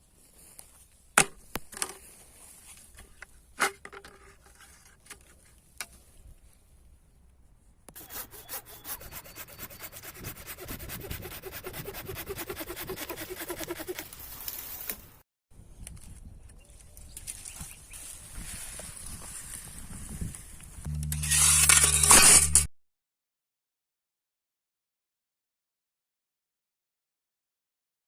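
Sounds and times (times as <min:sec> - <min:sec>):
hand saw cutting wood: 0:07.9 - 0:14.2, 0:20.9 - 0:22.7.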